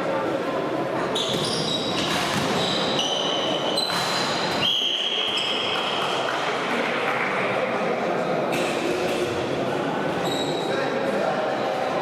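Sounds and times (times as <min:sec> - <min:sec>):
shoes squeaking on floor: 0:01.1 - 0:05.9, 0:10.2 - 0:10.7.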